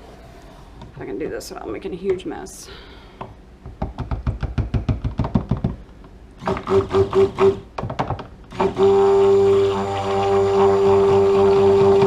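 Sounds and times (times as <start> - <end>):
stick blender motor humming: 8.5 - 12.0.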